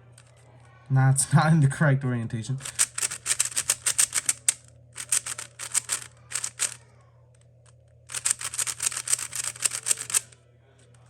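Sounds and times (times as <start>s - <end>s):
speed cube clicking turns: 2.6s - 6.8s, 8.1s - 10.4s.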